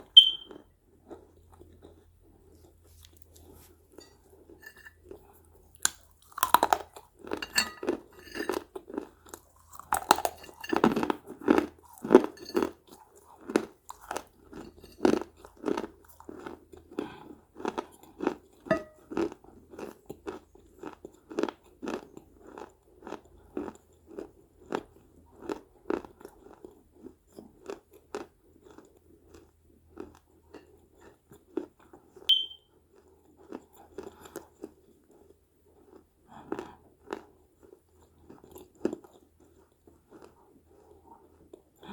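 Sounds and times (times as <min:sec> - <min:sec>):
crunching and chewing clay: 0:00.0 - 0:41.9
high-pitched chirp: 0:00.2 - 0:00.5, 0:32.3 - 0:32.6.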